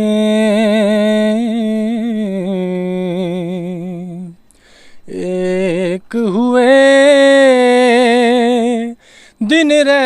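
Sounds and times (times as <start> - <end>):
man singing unaccompanied: 0.0 - 10.0
singer taking a breath: 4.5 - 5.1, 9.0 - 9.4.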